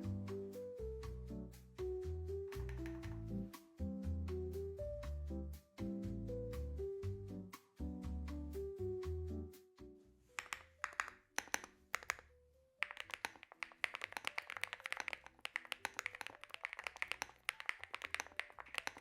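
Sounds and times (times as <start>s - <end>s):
typing on mechanical keyboard: 2.5s - 3.2s, 10.4s - 12.2s, 12.8s - 19.0s.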